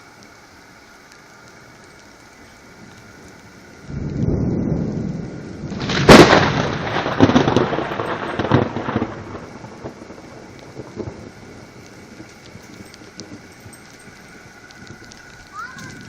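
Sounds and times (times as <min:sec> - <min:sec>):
rain hissing: 0:00.0 - 0:16.0
thunder rumbling and cracking: 0:02.8 - 0:14.0.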